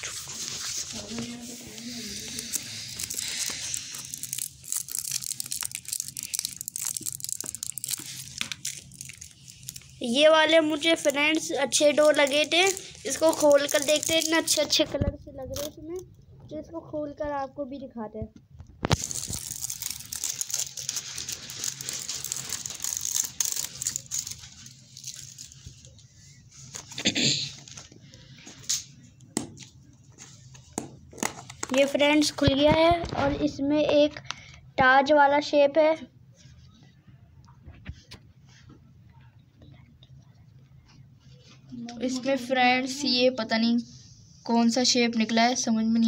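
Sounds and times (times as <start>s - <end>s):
plastic packaging crinkling and tearing: 0.0s - 14.8s, 15.4s - 15.8s, 18.8s - 27.0s, 31.1s - 33.4s.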